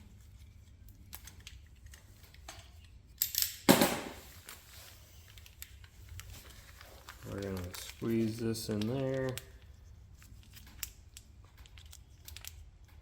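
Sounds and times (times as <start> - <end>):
sharp clatters on a workbench: 3.2 - 4.3
light clicks of handling: 5.2 - 13.0.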